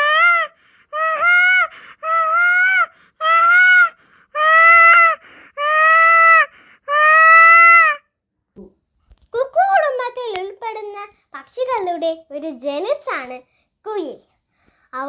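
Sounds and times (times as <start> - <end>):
child imitating peacock cries: 0.0 - 8.1.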